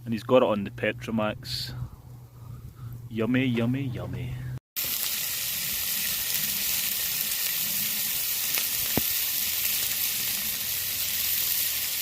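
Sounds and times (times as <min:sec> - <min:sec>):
fat sizzling in a pan: 0:04.8 - 0:12.0.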